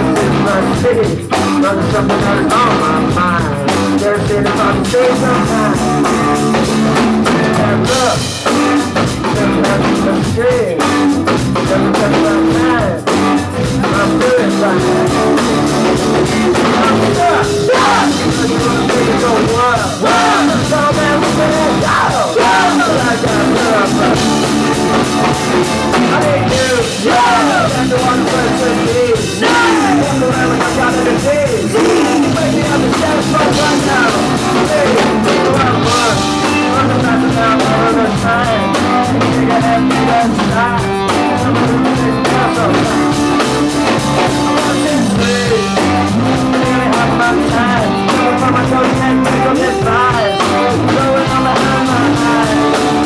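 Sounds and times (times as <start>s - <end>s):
drum kit beat: 0.0s - 53.0s
rock band playing live: 0.0s - 53.0s.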